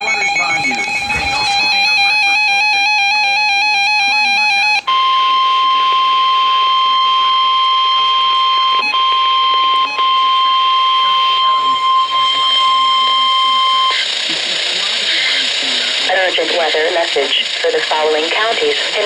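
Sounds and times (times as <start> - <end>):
warbling digital data tones: 0.0 - 2.4
steady warning alarm tone: 0.0 - 19.0.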